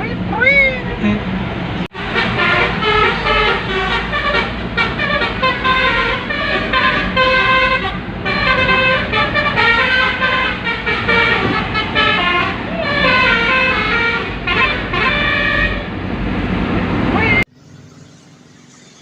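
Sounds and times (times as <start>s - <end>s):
bus horn playing a tune: 2.0s - 16.0s.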